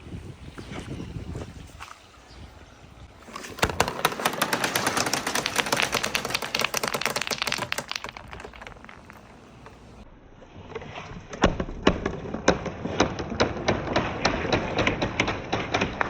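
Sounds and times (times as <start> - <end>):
marbles clattering down wooden run: 3.5 - 10.0.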